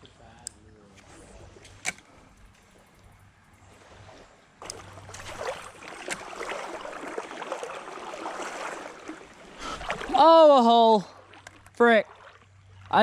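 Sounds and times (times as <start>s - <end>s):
wading through shallow water: 0.0s - 13.0s.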